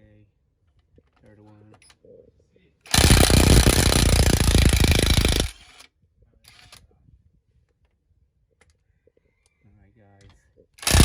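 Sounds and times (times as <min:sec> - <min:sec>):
impact wrench hammering: 0:02.9 - 0:05.6.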